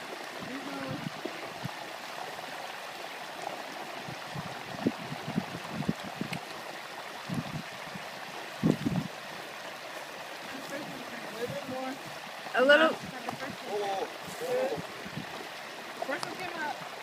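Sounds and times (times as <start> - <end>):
hot oil bubbling and hissing: 0.0 - 17.0.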